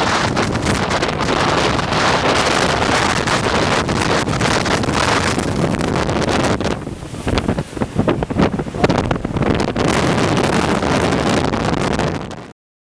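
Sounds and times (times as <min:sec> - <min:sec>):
gusty wind buffeting microphone: 0:00.0 - 0:12.5.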